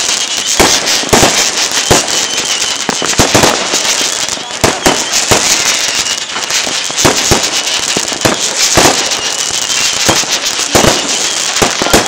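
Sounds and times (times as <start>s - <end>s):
fireworks crackling: 0.0s - 12.0s
fireworks shells bursting: 0.0s - 12.0s.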